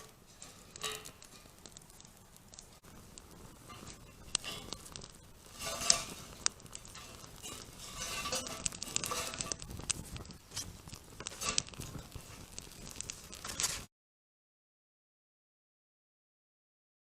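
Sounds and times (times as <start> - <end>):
metal cookware clinking and scraping: 0.0 - 1.7, 3.6 - 9.8, 10.5 - 12.0
rustling: 0.0 - 13.9.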